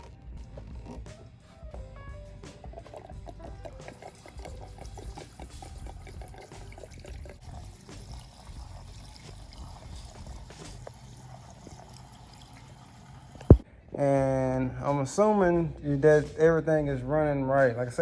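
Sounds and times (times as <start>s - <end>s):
fuel trickling into tank: 0.0s - 13.7s.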